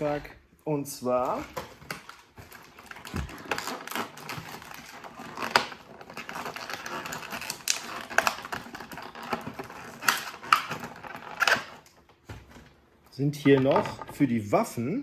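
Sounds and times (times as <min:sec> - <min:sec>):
plastic parts clicking and snapping: 0:01.2 - 0:12.7.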